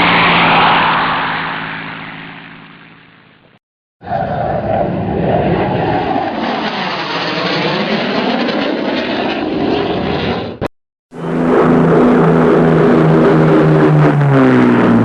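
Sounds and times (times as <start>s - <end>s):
droning engine: 0.0s - 3.6s, 11.1s - 15.0s
airplane flying past: 0.0s - 15.0s.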